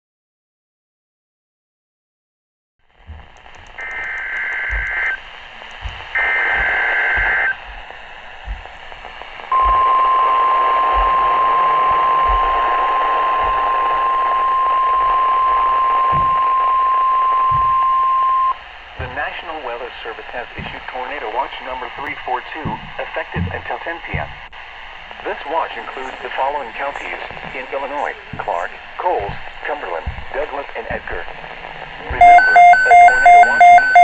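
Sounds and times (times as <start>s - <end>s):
radio static: 3.0s - 34.0s
steady warning alarm tone: 3.1s - 24.5s, 25.2s - 34.0s
two-tone data bursts: 3.4s - 24.4s, 32.0s - 34.0s.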